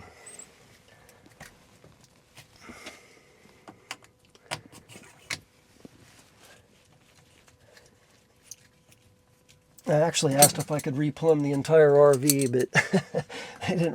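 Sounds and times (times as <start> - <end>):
faint steady hum: 0.0 - 13.9
tools and fittings clicking: 10.3 - 10.9, 11.5 - 12.7.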